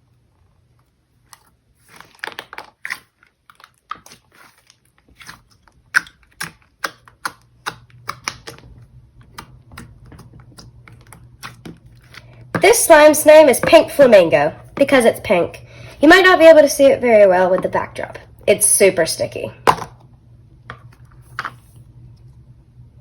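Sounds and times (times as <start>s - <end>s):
slime squished by hand: 1.3s - 12.2s.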